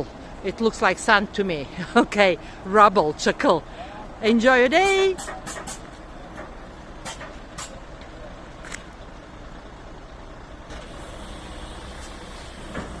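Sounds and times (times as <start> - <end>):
truck engine rumbling: 0.0 - 13.0.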